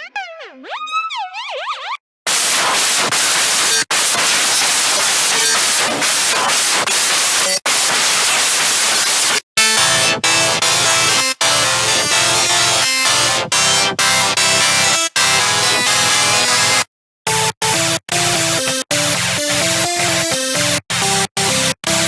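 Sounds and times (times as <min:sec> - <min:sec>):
loud hissing noise pattern: 0:02.3 - 0:09.4
rhythmic synth with bass: 0:02.3 - 0:22.0.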